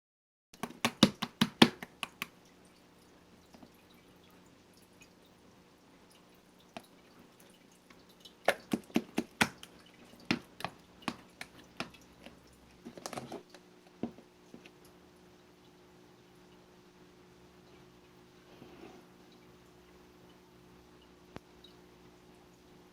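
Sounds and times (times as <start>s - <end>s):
slime clicking and popping: 8.5s - 12.0s.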